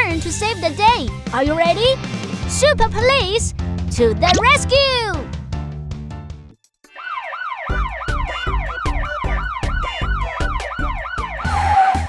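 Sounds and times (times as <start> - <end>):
cartoon police siren wailing: 7.0 - 12.0
steady music beat: 7.7 - 12.0.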